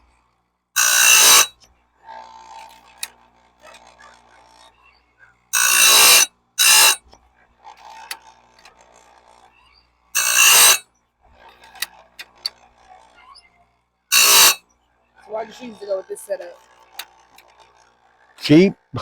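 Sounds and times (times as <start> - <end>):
grinding wheel grinding saw blade: 0.8 - 1.5, 5.6 - 7.0, 10.2 - 10.8, 11.6 - 12.5, 14.1 - 14.6.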